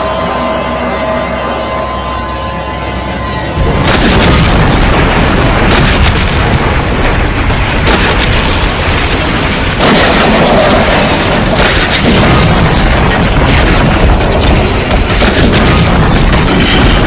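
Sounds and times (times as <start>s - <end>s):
loud booms and crashing rumble: 3.6s - 17.0s.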